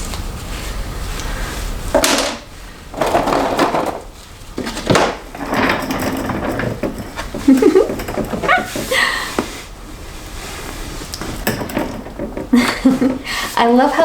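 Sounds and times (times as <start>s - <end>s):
hair rustling on rollers: 2.9s - 14.0s.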